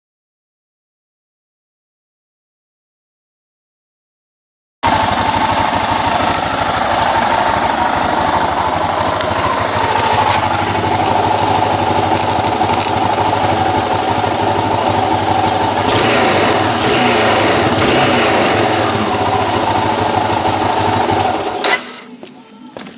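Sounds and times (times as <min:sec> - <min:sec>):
motorcycle engine running: 0:04.8 - 0:22.1.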